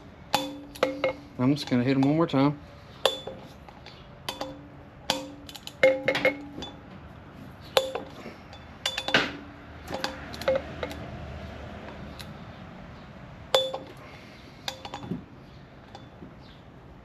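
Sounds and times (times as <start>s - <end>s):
short metallic ring: 3.0s - 3.6s, 7.7s - 11.0s, 13.5s - 14.0s.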